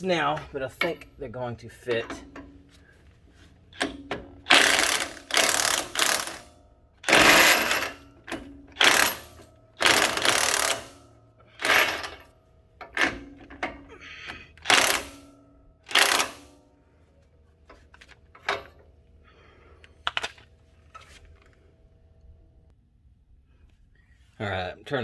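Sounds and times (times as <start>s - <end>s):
socket ratchet clicking: 3.7s - 11.0s, 11.6s - 12.2s, 14.4s - 15.3s, 15.9s - 16.5s.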